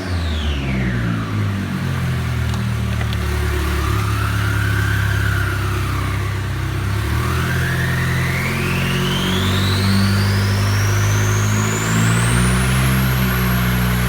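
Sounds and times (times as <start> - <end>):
car engine running: 0.8 - 8.4.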